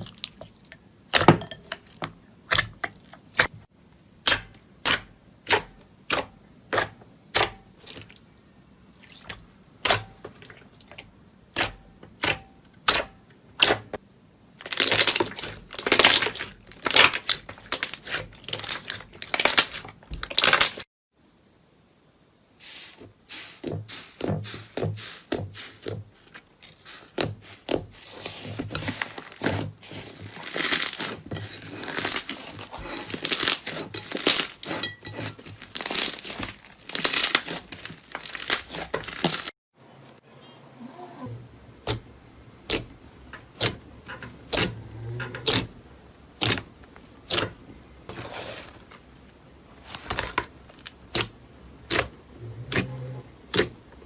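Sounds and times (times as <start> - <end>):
slime crackling and popping: 14.6 - 20.8, 30.3 - 31.2, 35.6 - 39.5.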